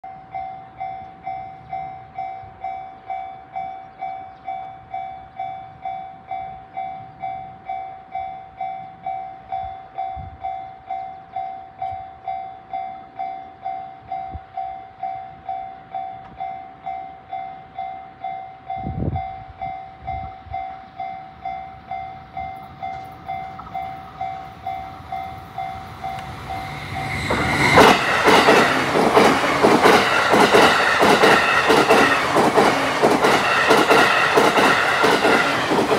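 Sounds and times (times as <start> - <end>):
train passing: 11.8 - 35.9
level crossing alarm bell: 19.4 - 27.0.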